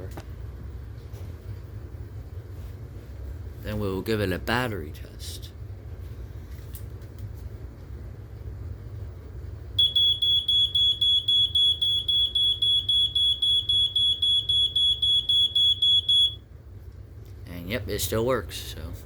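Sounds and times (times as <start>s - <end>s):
smoke alarm rapid beeping: 9.8s - 16.5s.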